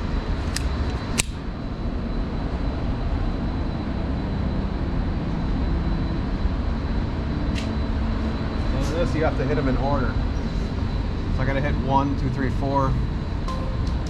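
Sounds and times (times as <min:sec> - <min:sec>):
ventilation system rumble: 0:00.0 - 0:14.0
sharp click: 0:00.6 - 0:01.4.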